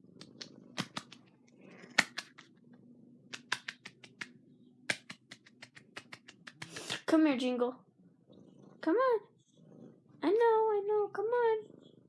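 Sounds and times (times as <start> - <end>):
clicks and taps on phone microphone: 3.3 - 4.3, 4.9 - 7.0.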